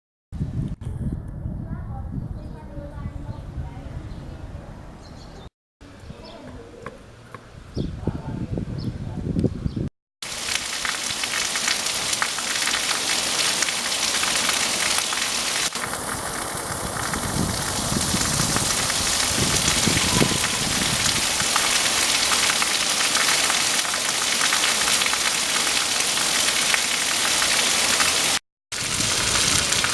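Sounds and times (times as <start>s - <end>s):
heavy rain falling: 10.2s - 29.9s.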